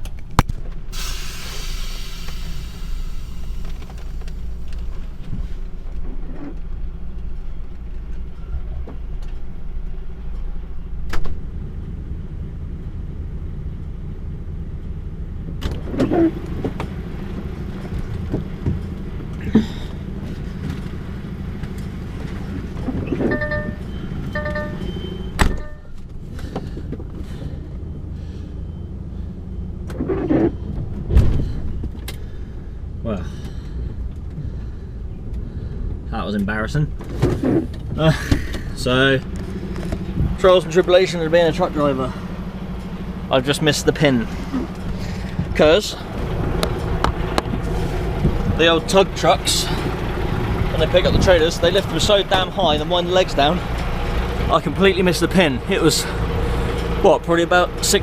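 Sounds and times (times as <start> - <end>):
diesel truck engine running: 0.0 - 30.0, 37.0 - 58.0
electronic beeps: 23.3 - 25.9.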